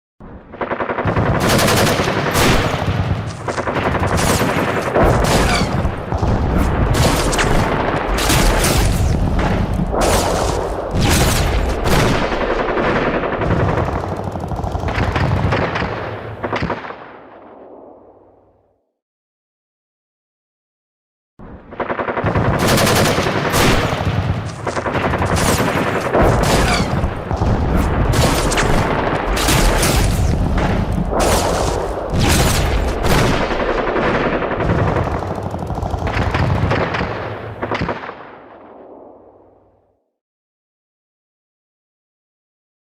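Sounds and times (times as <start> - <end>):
rapid automatic gunfire: 0.5 - 17.1, 21.7 - 38.4
loud single gunshots: 1.5 - 12.2, 23.0 - 33.7.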